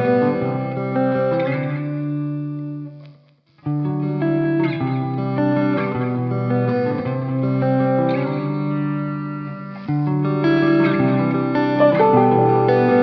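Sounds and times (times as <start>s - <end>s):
guitar playing ringing chords: 7.4s - 13.0s.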